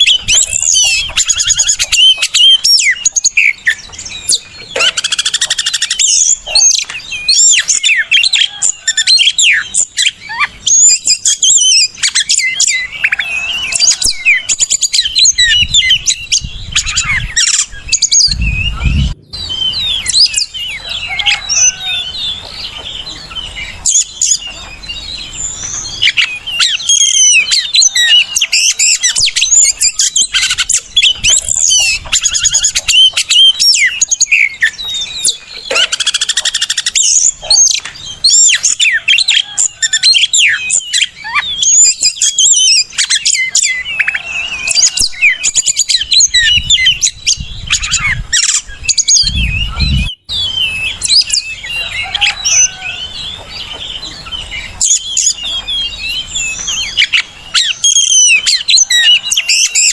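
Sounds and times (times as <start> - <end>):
bird singing whistles and chirps: 0.0 - 59.9
low rumble: 18.2 - 20.7.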